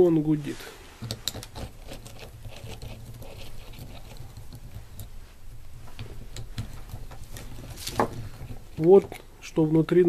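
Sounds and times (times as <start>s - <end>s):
low steady hum: 0.0s - 10.0s
rustling: 0.0s - 10.0s.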